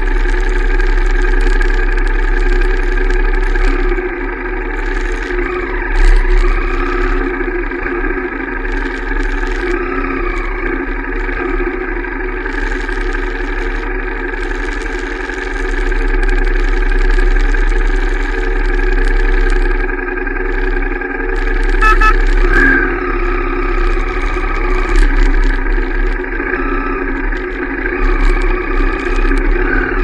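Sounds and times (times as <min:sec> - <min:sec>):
motorcycle engine and exhaust: 0:00.0 - 0:30.0
brief higher tone: 0:21.8 - 0:23.0.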